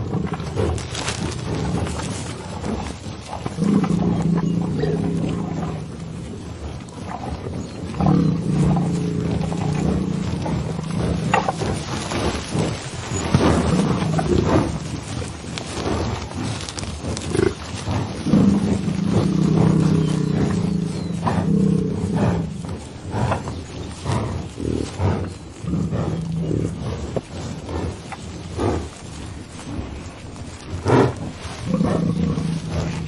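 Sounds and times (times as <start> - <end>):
bison bellowing: 3.4 - 6.4, 7.1 - 15.0, 17.3 - 28.9, 30.8 - 33.0.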